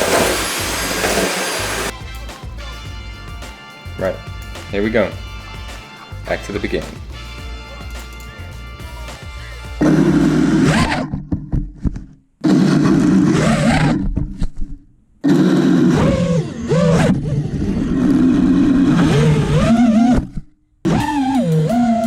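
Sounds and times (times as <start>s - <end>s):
drone motors whining: 0.0s - 1.9s.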